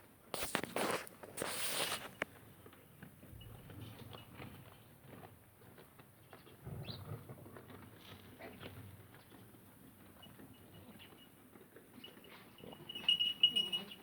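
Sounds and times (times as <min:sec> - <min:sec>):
scuffing rustles: 0:00.4 - 0:02.3
soft footsteps and clicks: 0:00.4 - 0:06.5.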